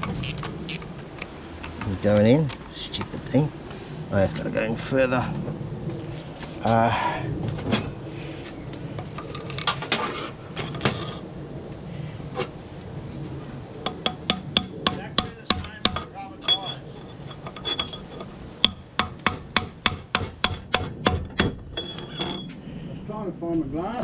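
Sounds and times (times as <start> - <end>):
hammer tapping metal: 13.9 - 22.5.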